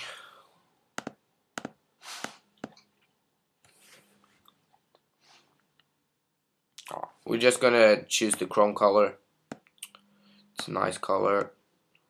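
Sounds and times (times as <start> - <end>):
computer mouse clicks: 1.0 - 2.9
soft breaths: 3.6 - 5.7, 10.0 - 10.6.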